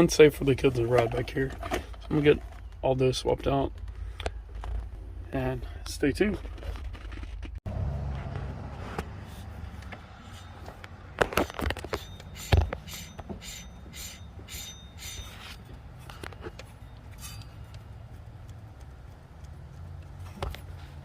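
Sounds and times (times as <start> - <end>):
sharp metallic knocks: 10.4 - 15.6
ringing metal clicks: 11.8 - 15.7.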